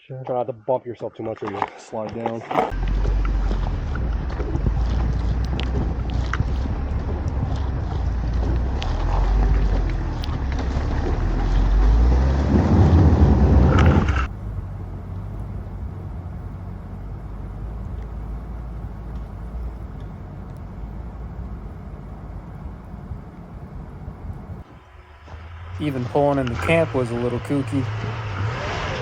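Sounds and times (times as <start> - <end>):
wind noise on microphone: 2.7 - 10.5, 11.1 - 14.3
steady low rumble: 2.7 - 29.0
truck engine running: 2.7 - 29.0.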